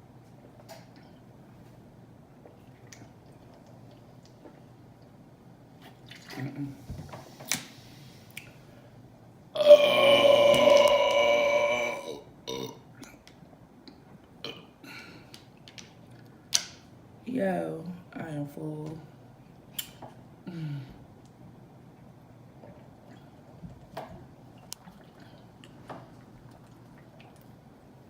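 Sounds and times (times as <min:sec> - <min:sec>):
woman burping loudly: 0:09.6 - 0:12.8.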